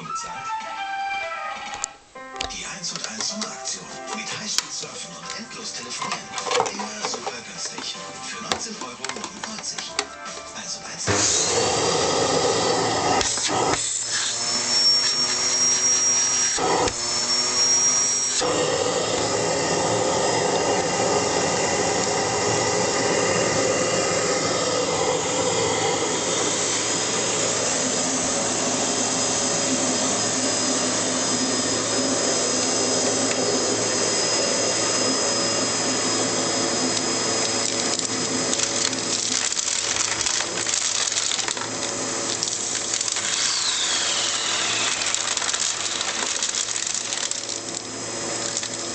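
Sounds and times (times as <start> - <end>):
vacuum cleaner running: 2.9 - 48.9
high thin whine: 17.5 - 37.6.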